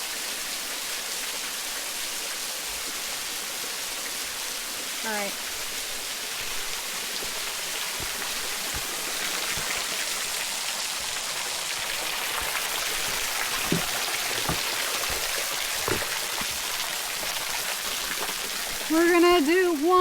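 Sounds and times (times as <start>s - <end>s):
waterfall splashing into pool: 0.0s - 20.0s.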